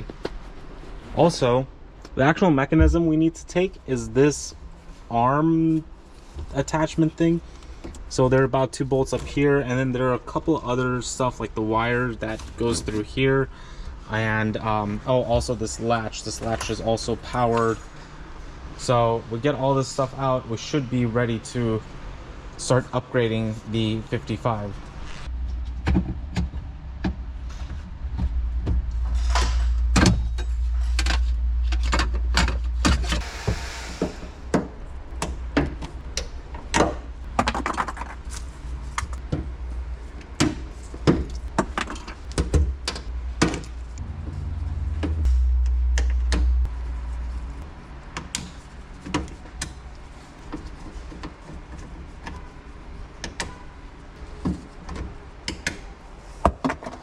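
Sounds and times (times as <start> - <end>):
heavy low rumble: 0.9 - 4.6, 26.6 - 35.5, 43.1 - 47.8.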